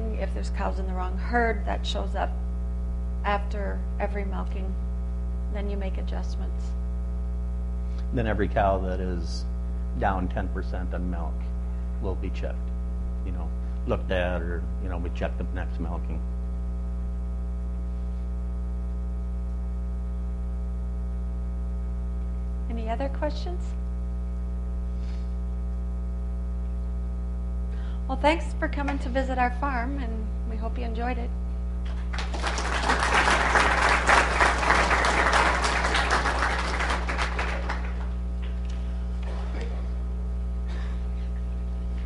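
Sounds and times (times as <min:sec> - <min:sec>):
electrical mains hum: 0:00.0 - 0:42.0
audience applauding: 0:31.9 - 0:38.6.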